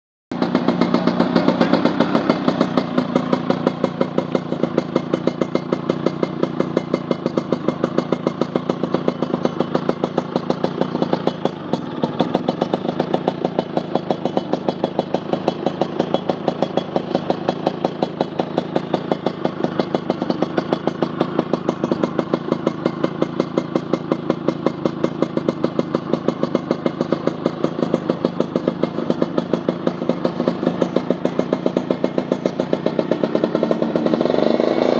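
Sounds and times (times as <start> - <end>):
motorcycle engine idling: 0.3 - 34.9.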